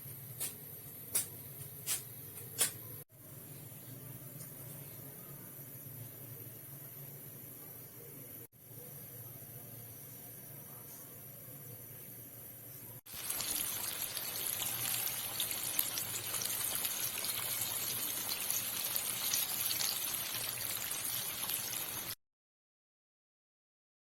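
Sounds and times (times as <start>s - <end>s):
chicken deep-frying in hot oil: 13.0s - 22.2s.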